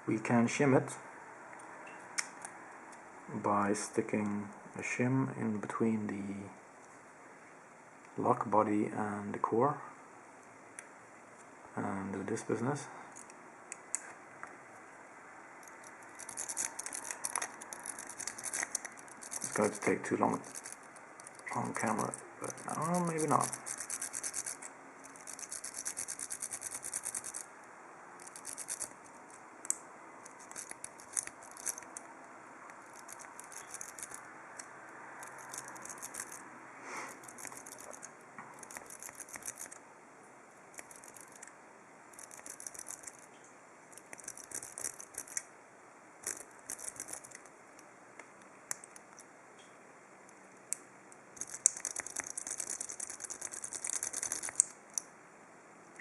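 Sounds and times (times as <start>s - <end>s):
metal scraping in a padlock: 15.6s - 27.5s, 28.2s - 29.4s, 30.2s - 32.1s, 32.8s - 36.4s, 37.1s - 39.8s, 40.7s - 41.5s, 42.1s - 43.3s, 43.9s - 45.5s, 46.2s - 47.5s, 51.4s - 55.0s.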